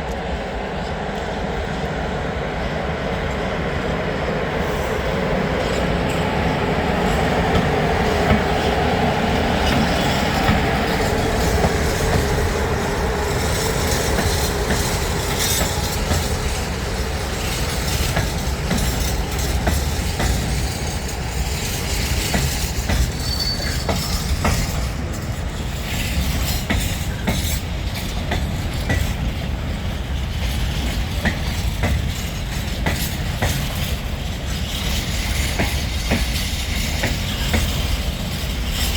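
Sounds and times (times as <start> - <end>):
train wheels clicking over rails: 2.9 - 38.9.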